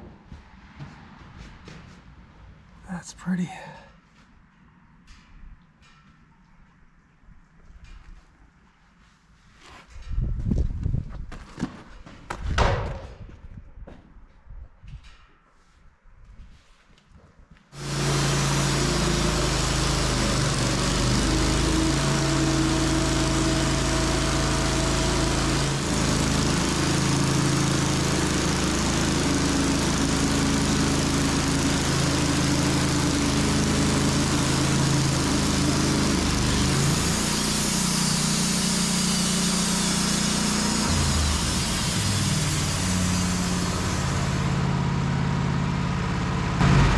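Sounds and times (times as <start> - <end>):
sawmill engine running: 17.8 - 46.9.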